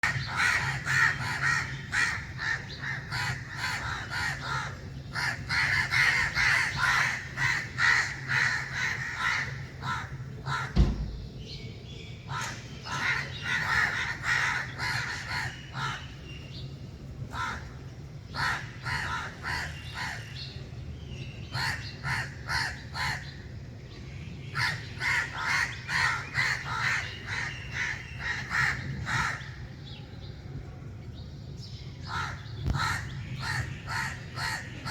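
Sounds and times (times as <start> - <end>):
crows cawing: 0.0 - 11.0, 12.3 - 16.2, 17.3 - 20.3, 21.5 - 23.3, 24.6 - 29.7, 32.1 - 34.9
dull thump: 10.8 - 11.5.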